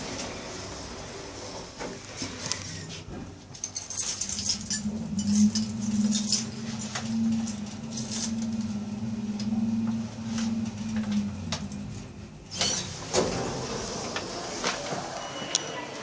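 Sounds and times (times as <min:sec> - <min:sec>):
lift motor hum: 0:03.1 - 0:15.0.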